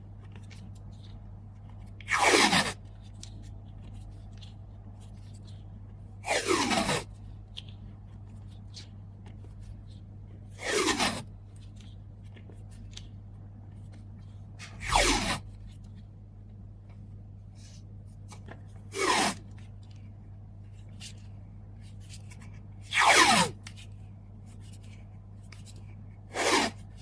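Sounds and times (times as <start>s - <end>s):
packing material rasping pulls: 2.1s - 2.8s, 10.6s - 11.3s, 14.6s - 15.5s, 19.0s - 19.5s, 26.3s - 26.8s.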